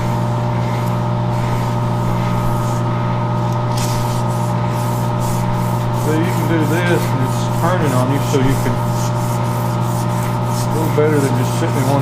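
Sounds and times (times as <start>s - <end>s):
lathe humming: 0.0s - 12.0s
sandpaper rubbing on metal: 3.7s - 12.0s.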